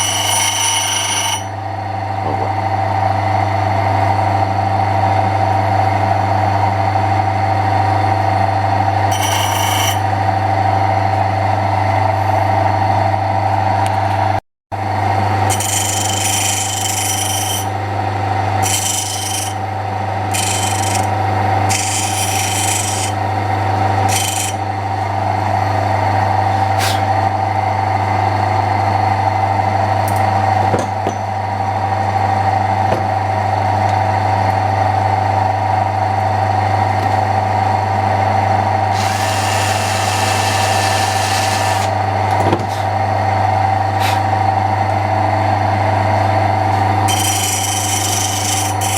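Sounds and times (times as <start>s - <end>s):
electric drill motor running: 18.6s - 19.6s, 20.3s - 23.2s, 24.0s - 24.6s, 38.9s - 42.1s
rasping cutting: 18.6s - 19.6s, 20.3s - 23.2s, 24.1s - 24.6s, 38.9s - 42.0s.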